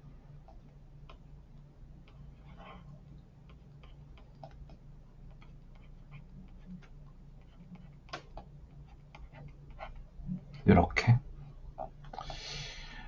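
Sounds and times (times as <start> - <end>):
low steady hum: 0.0 - 13.0
pen scratching on paper: 5.3 - 6.8, 8.8 - 10.0.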